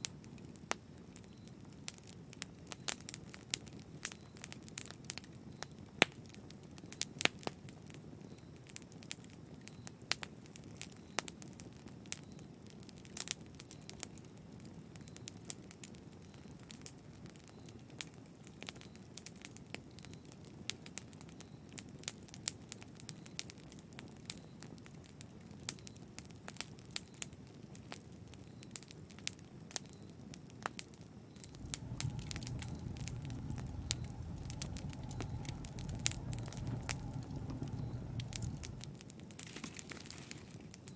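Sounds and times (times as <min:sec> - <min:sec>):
low rumble of flames: 0:31.4 - 0:40.8
wood fire crackling: 0:31.4 - 0:40.8.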